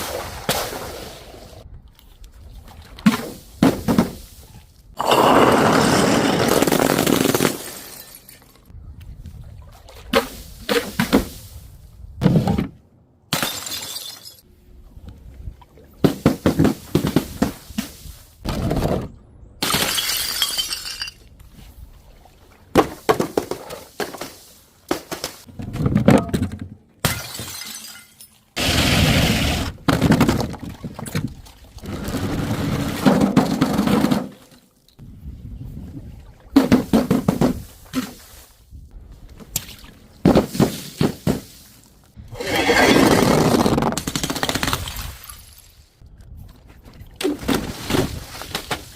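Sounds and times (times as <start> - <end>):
glass bottles smashing: 7.3 - 8.6, 13.3 - 14.4, 19.6 - 21.3, 27.0 - 28.4.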